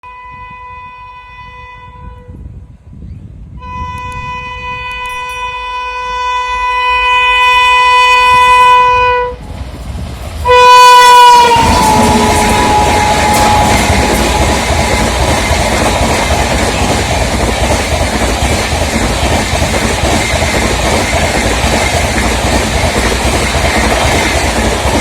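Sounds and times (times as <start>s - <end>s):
locomotive horn blast: 0.0s - 2.4s, 3.6s - 9.4s, 10.4s - 15.4s
train rushing past: 3.6s - 25.0s.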